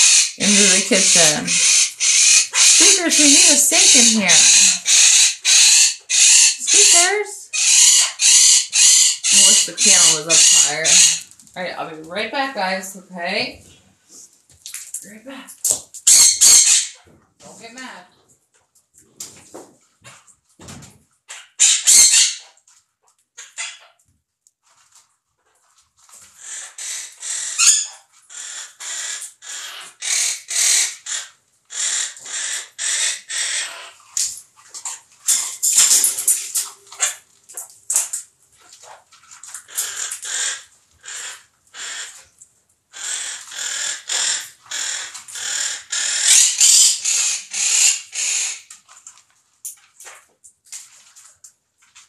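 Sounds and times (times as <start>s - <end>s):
parrots squawking: 0.0s - 11.3s, 16.0s - 17.0s, 21.3s - 22.5s, 23.4s - 23.9s, 26.4s - 34.2s, 39.5s - 42.3s, 42.9s - 48.7s.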